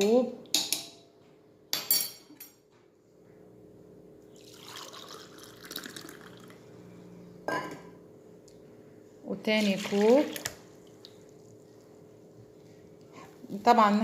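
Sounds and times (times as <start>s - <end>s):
milk pouring into a bowl: 4.4s - 6.7s, 9.6s - 11.7s.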